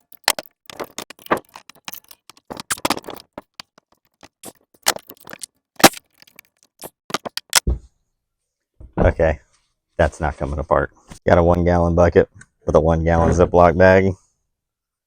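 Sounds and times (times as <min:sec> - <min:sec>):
metal clicks and knocks: 0:00.0 - 0:07.7
metal scraping: 0:13.1 - 0:13.7.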